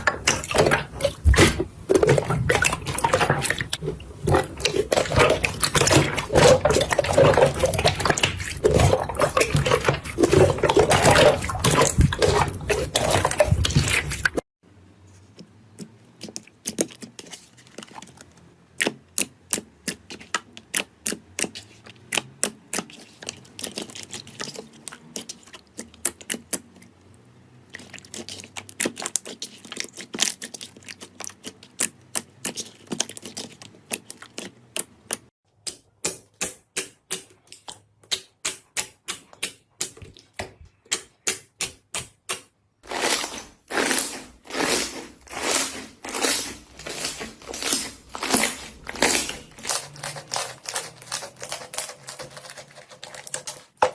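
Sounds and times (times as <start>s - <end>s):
slime squelching: 0.0s - 53.9s.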